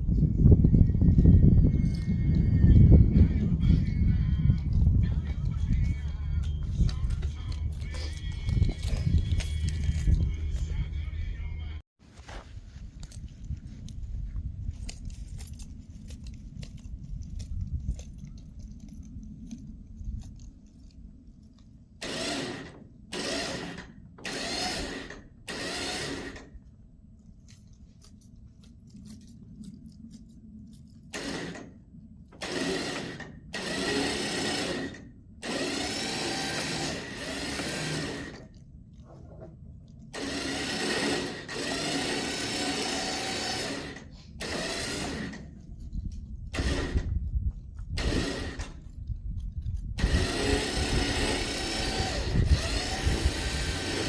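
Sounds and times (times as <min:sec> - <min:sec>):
electric winch motor running: 0:22.0 - 0:26.5, 0:31.1 - 0:31.7, 0:32.4 - 0:38.6, 0:40.1 - 0:45.5, 0:46.5 - 0:47.1, 0:48.0 - 0:48.8, 0:50.0 - 0:54.0.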